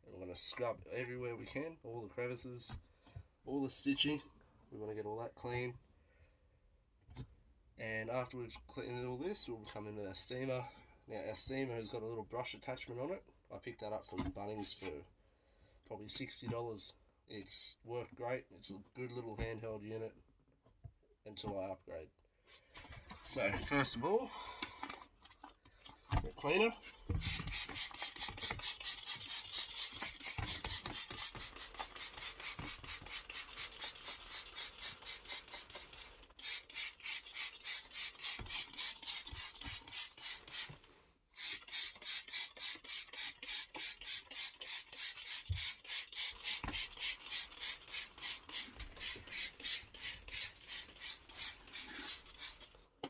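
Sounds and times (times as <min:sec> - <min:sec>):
spray bottle squirting: 0:27.1 - 0:40.8, 0:41.4 - 0:52.8.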